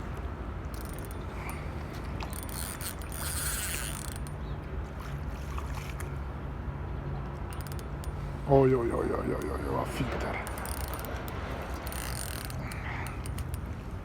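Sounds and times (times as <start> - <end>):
fishing reel clicks: 0.7 - 4.4, 7.5 - 8.2, 10.4 - 13.6
fishing reel whirring: 0.7 - 4.4, 10.4 - 13.7.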